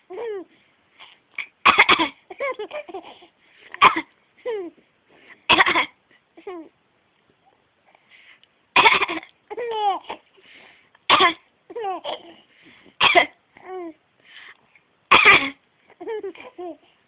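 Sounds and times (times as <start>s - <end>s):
person coughing: 8.8s - 9.3s, 13.0s - 13.4s, 15.1s - 15.6s.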